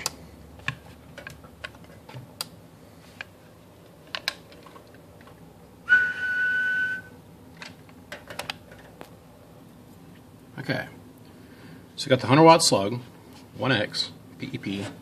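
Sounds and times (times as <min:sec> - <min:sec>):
high whistle-like tone: 0:05.9 - 0:07.2.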